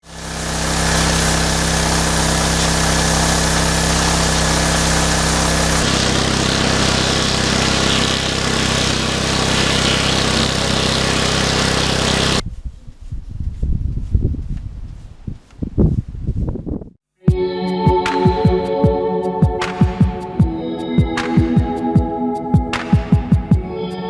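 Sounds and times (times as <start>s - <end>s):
pressure washer engine: 0.0s - 12.4s
water jet hissing: 0.1s - 12.4s.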